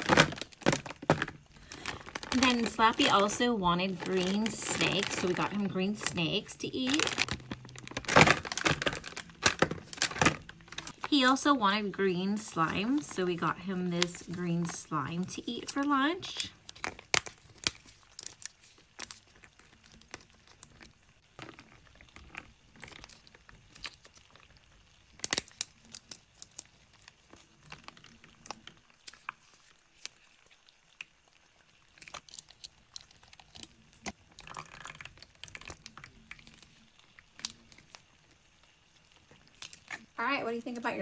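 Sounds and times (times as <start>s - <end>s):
plastic packaging crinkling: 0.0s - 41.0s.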